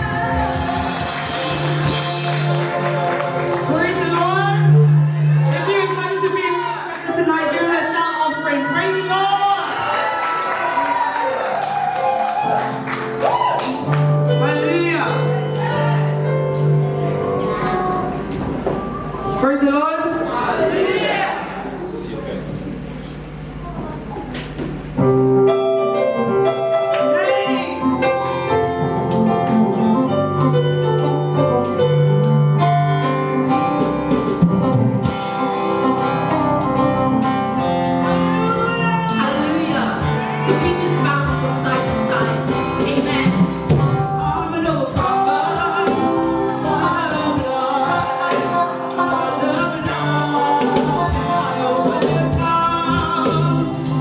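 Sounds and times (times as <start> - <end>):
band playing gospel music: 0.0 - 7.6, 9.0 - 54.0
voices singing: 16.8 - 24.9.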